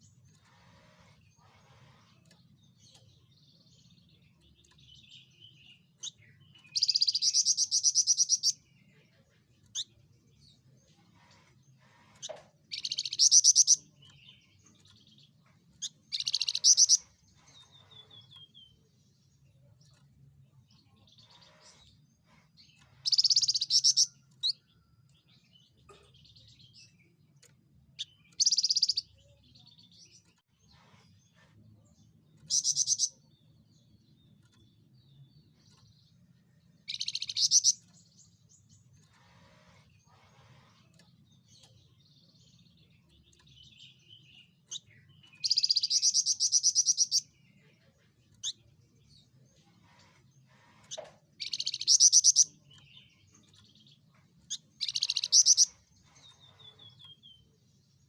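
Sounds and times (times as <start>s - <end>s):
bird singing high trills: 54.8s - 55.7s.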